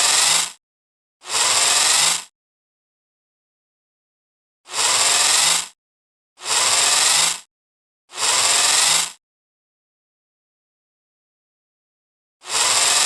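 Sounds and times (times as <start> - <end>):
servo motor whirring: 0.0 - 0.6, 1.2 - 2.3, 4.7 - 5.8, 6.4 - 7.5, 8.1 - 9.2, 12.4 - 13.0.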